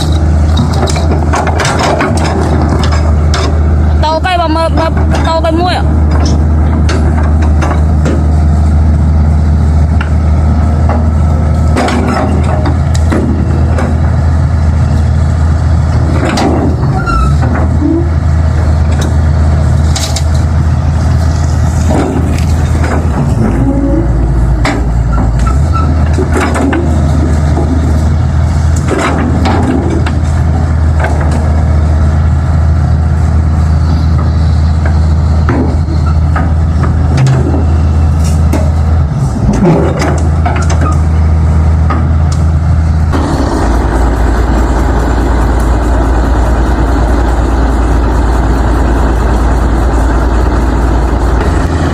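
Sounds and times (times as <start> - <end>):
sharp knocks and clanks: 0.0 - 3.6, 4.7 - 8.3, 10.8 - 14.2, 16.0 - 18.0, 21.8 - 23.8, 24.6 - 28.1, 28.8 - 31.6, 34.2 - 38.8, 39.4 - 41.1
heavy vehicle engine humming: 0.0 - 51.9.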